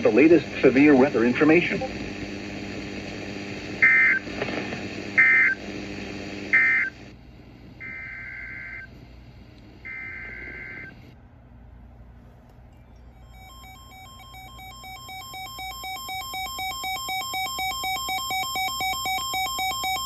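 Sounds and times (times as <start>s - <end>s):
radio hiss: 0.0s - 11.2s
warbling digital data tones: 13.0s - 20.0s.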